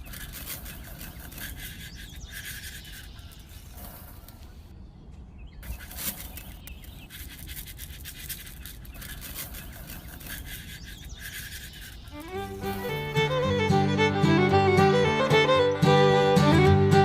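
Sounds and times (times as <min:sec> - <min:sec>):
small electric motor whirring: 0:07.2 - 0:16.0.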